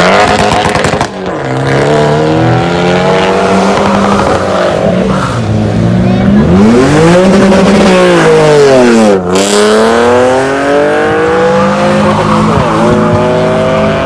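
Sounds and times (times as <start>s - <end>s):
car engine revving hard: 0.0s - 14.0s.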